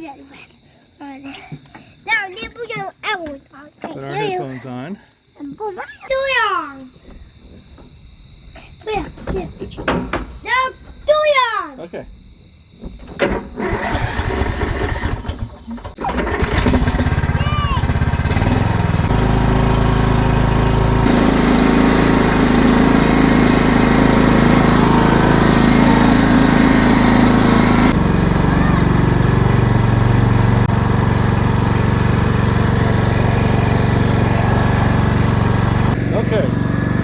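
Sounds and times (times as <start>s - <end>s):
riding lawn mower engine running: 13.2s - 37.0s.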